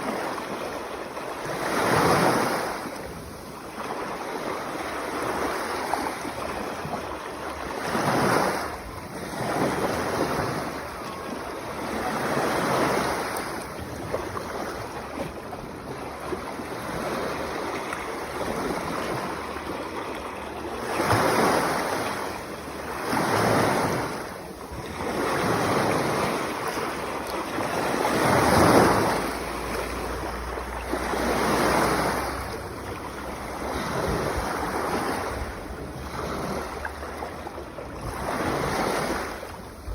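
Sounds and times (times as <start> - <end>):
sea waves washing onto shore: 0.0 - 39.9.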